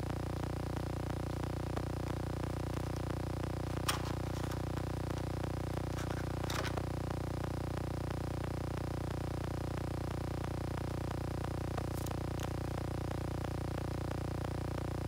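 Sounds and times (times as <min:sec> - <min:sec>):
electrical hum: 0:00.0 - 0:15.0
small clicks or scrapes: 0:03.8 - 0:05.3, 0:05.9 - 0:06.9.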